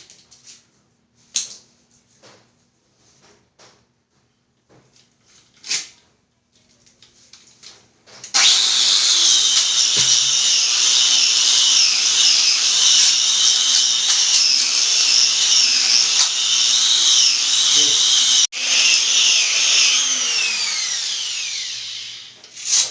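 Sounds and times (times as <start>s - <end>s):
power tool high-pitched whine: 8.4s - 22.4s.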